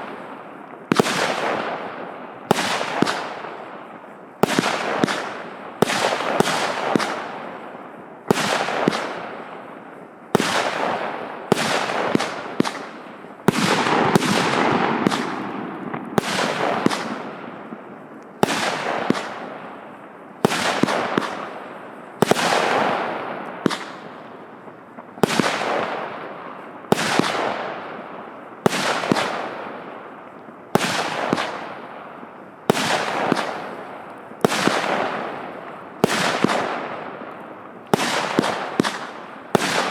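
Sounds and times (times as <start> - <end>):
firework bangs: 0.0 - 30.1, 30.7 - 39.9
crackling firework bursts: 0.0 - 39.9.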